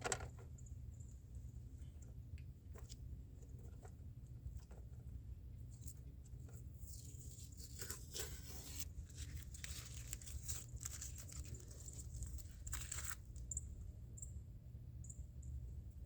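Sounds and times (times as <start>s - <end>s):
steady low hum: 0.0s - 16.0s
parts rustling and scraping: 1.8s - 13.6s.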